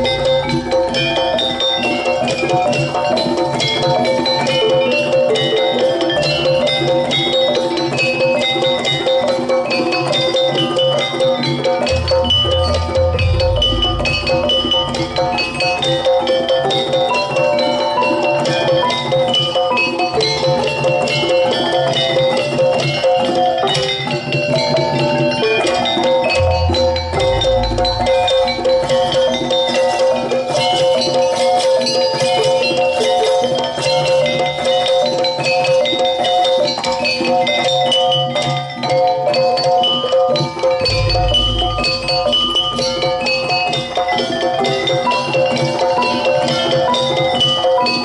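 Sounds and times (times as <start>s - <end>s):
drums: 0.0s - 48.0s
pitched percussion notes: 0.0s - 48.0s
pitched metallic notes: 11.6s - 17.2s, 26.0s - 30.6s, 40.5s - 44.5s
deep bass: 12.0s - 14.6s, 40.9s - 42.5s.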